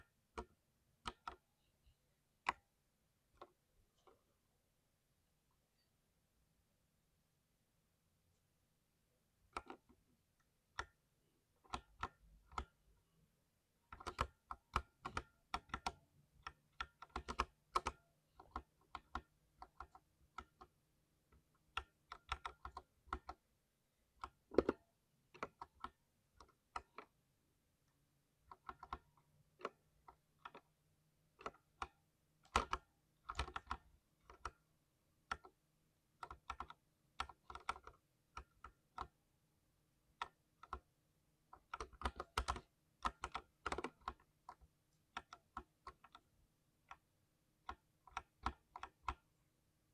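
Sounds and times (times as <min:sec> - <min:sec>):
mechanical keyboard typing: 0:11.7 - 0:12.8, 0:13.9 - 0:20.7, 0:21.7 - 0:23.4, 0:24.2 - 0:24.8, 0:28.5 - 0:30.7, 0:31.4 - 0:34.6, 0:36.2 - 0:39.2, 0:41.6 - 0:46.3, 0:47.6 - 0:49.2.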